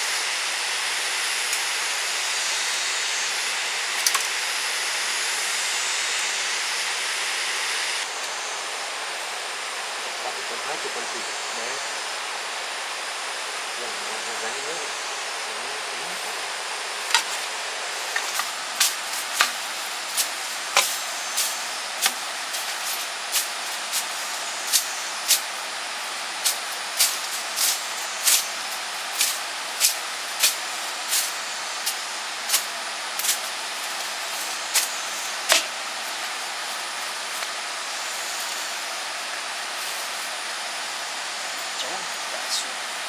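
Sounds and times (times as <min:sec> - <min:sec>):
flowing water hiss: 0:00.0 - 0:43.0
digging tool chopping into soil: 0:17.1 - 0:25.6, 0:26.4 - 0:37.6.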